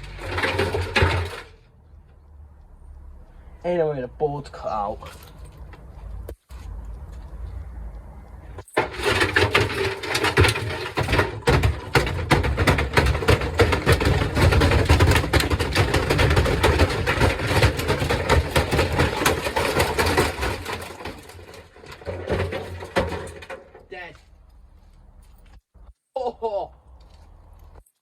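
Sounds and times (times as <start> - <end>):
washing machine drum rattling: 8.7 - 23.7.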